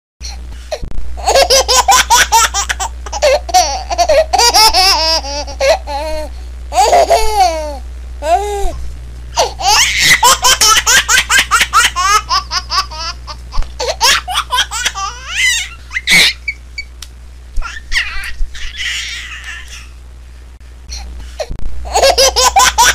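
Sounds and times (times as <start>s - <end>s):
low hum: 0.2s - 22.1s
baby giggling: 1.2s - 8.8s, 9.4s - 16.6s, 17.6s - 19.9s, 21.9s - 22.9s.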